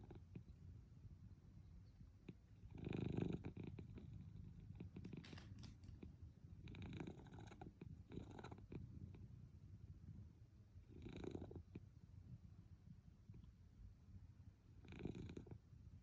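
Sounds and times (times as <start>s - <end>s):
cat purring: 2.7s - 5.8s, 6.6s - 9.2s, 10.9s - 11.9s, 14.8s - 15.6s.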